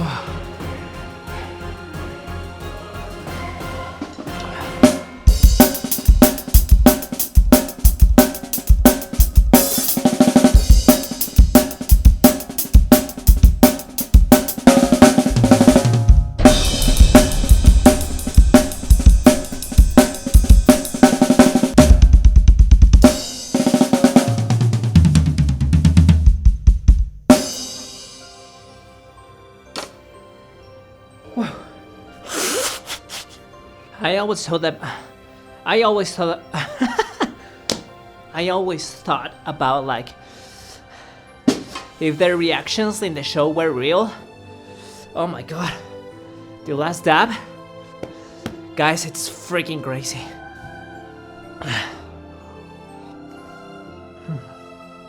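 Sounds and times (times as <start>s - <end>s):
backing track: 4.8s - 28.2s
drum kit played hard: 4.8s - 28.2s
bass drum run: 5.3s - 9.5s, 14.2s - 23.4s, 24.0s - 27.3s
cymbal crash: 10.6s - 22.4s, 27.4s - 28.4s.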